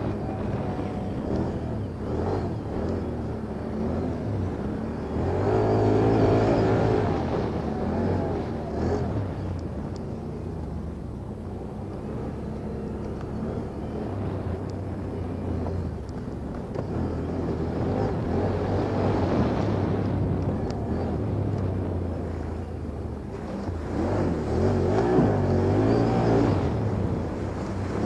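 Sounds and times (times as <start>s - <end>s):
vehicle engine revving: 0.0s - 28.0s.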